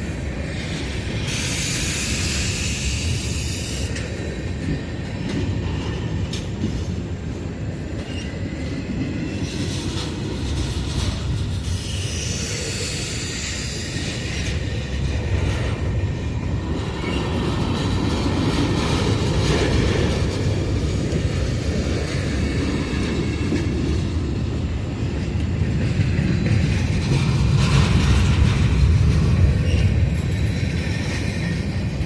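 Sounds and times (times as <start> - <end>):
freight train wheels rumbling on rail: 0.0 - 32.0
train wheel squeal: 0.0 - 32.0.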